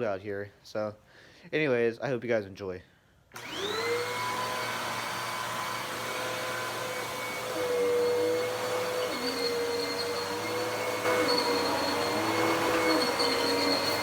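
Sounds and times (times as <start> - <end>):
vacuum cleaner motor whine: 3.4 - 14.0.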